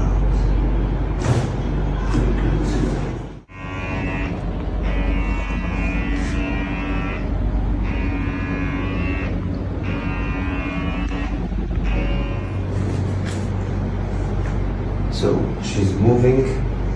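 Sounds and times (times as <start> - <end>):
steady low drone: 0.0 - 16.9.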